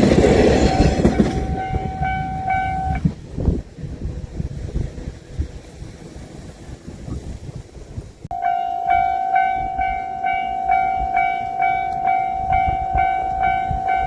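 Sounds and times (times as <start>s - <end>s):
low wind rumble: 0.0s - 14.0s
level crossing alarm bell: 0.4s - 3.0s, 8.3s - 14.0s.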